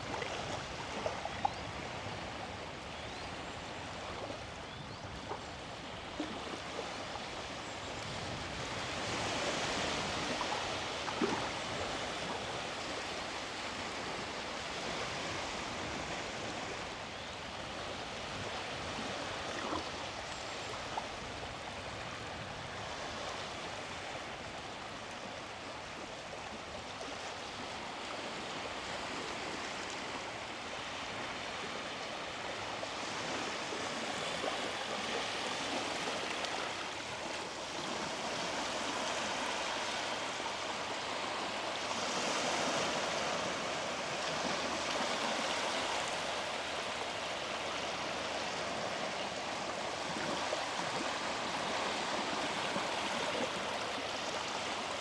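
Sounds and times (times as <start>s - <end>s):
sea waves breaking on beach: 6.0s - 16.9s, 27.5s - 55.0s.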